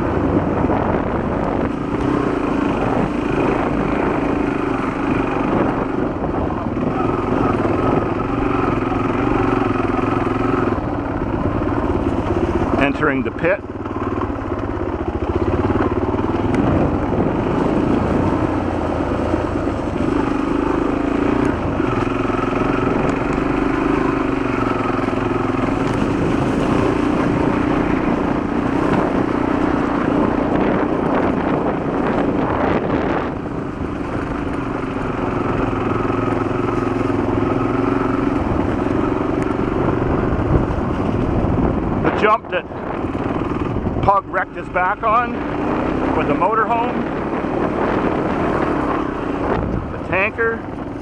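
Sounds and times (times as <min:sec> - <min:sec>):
motorcycle engine running: 0:00.0 - 0:51.0.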